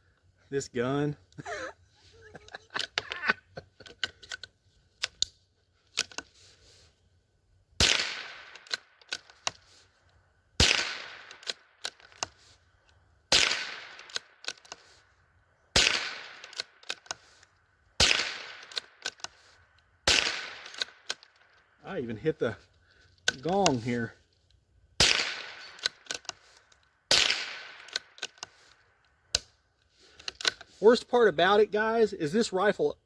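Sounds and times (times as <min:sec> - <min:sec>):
rifle shots with echo: 0:07.8 - 0:08.8, 0:10.6 - 0:11.5, 0:13.3 - 0:14.2, 0:15.8 - 0:16.6, 0:18.0 - 0:18.9, 0:20.0 - 0:21.0, 0:25.0 - 0:25.9, 0:27.1 - 0:28.0.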